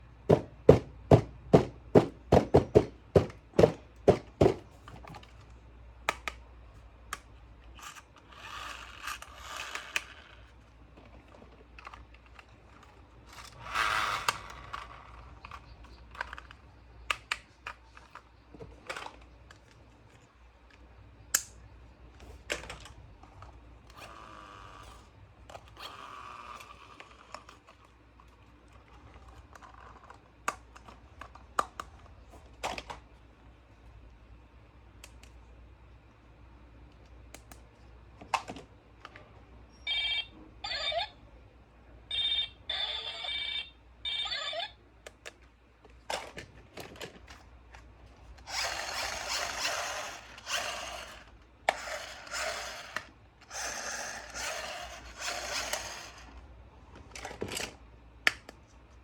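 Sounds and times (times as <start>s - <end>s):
plastic toys clicking: 7.1s - 20.8s, 45.0s - 56.4s.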